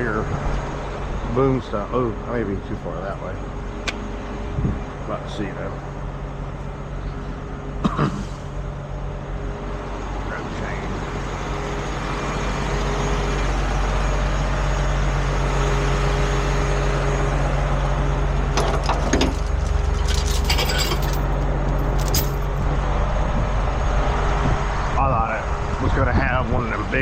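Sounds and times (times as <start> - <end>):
diesel truck engine running: 0.0 - 27.0
tow chain clanking: 18.5 - 22.7.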